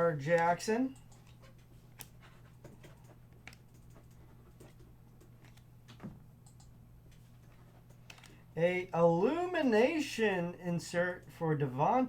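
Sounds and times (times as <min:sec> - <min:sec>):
trading cards clicking and rustling: 0:00.3 - 0:06.1, 0:07.1 - 0:08.4.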